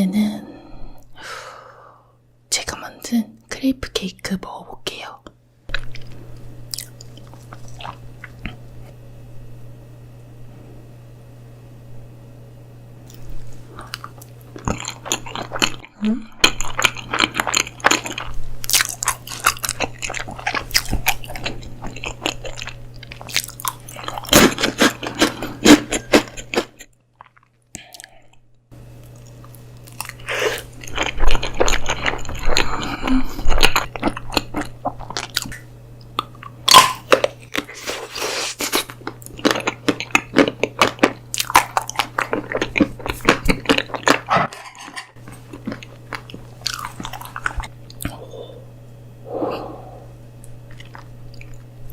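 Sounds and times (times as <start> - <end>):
person chewing and crunching food: 5.7 - 9.0, 13.0 - 48.8, 49.5 - 51.9.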